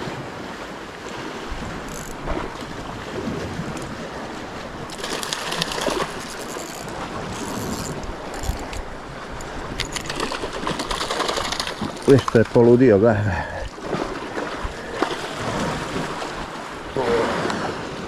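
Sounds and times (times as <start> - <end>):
wind on microphone: 0.0 - 12.4
sea waves washing on shore: 0.0 - 18.0.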